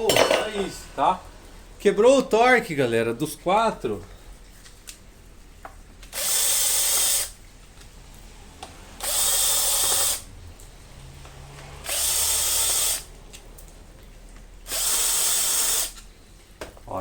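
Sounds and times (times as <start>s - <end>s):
power drill bursts: 6.1s - 7.4s, 8.6s - 10.4s, 11.5s - 13.2s, 14.6s - 16.1s.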